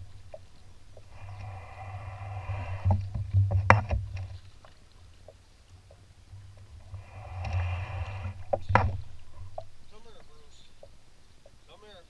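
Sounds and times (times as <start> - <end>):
paddle stroke swishing water: 0.0 - 11.7
paddle knocking against canoe hull: 8.4 - 11.6.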